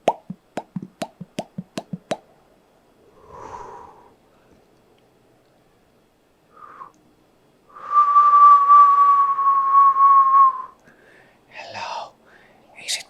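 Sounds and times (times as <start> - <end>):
person whistling long note: 7.8 - 10.8.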